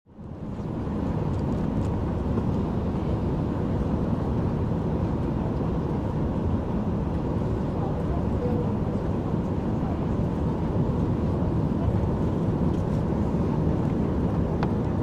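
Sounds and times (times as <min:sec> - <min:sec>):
airplane cabin rumble: 0:00.1 - 0:15.0.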